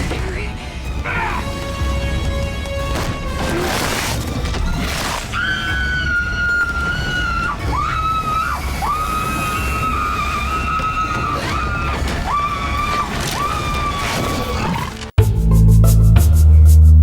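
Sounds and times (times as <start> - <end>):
dramatic film score: 0.0 - 17.0
crashing and splashing: 2.2 - 15.1.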